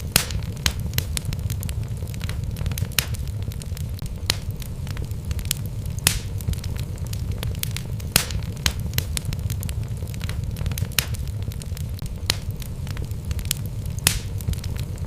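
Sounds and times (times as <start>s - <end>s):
fire flames rumbling: 0.0s - 15.0s
logs crackling and popping: 0.0s - 15.0s.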